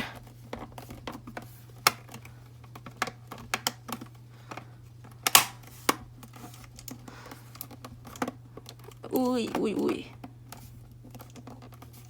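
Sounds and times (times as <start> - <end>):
plastic keyboard case clicks: 0.5 - 6.1.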